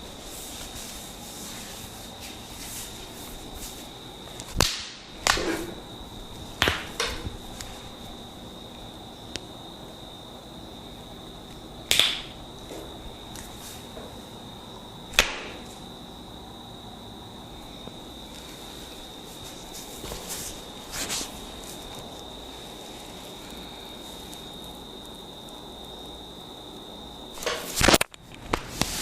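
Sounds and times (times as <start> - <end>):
hands slapping skin: 4.5 - 5.4, 6.6 - 7.2, 11.9 - 12.3.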